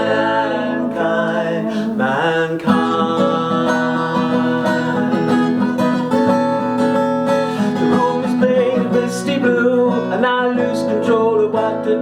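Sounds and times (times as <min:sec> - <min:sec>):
acoustic guitar chords: 0:00.0 - 0:12.0
person singing: 0:00.0 - 0:12.0.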